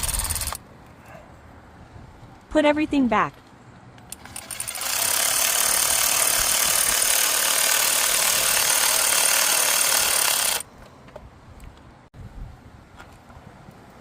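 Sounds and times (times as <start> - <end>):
handheld power tool running: 0.0 - 0.6, 4.1 - 10.6.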